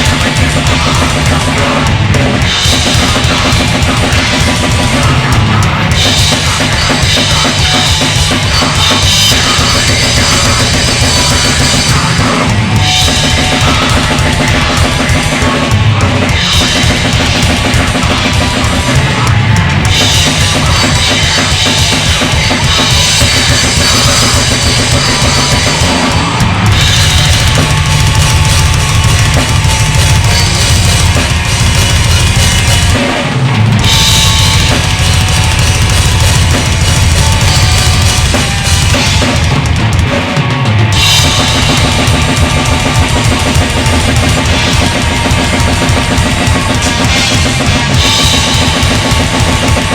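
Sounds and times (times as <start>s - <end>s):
fast bass drum pattern: 0.0s - 49.9s
heavy metal song: 0.0s - 49.9s.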